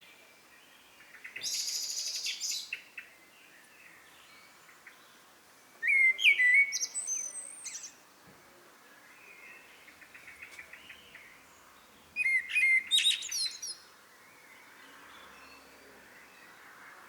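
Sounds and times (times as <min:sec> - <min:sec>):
blackbird singing: 0:00.6 - 0:03.1, 0:05.8 - 0:08.0, 0:09.1 - 0:16.6.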